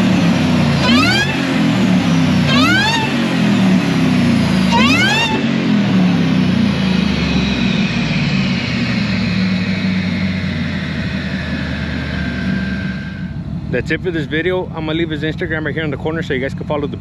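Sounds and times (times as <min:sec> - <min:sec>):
engine running: 0:00.0 - 0:17.0
supercharger whine: 0:00.0 - 0:17.0.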